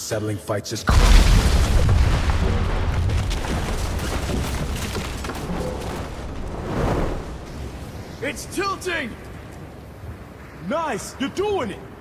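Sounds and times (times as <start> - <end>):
deep boom rumble: 0.9 - 8.6.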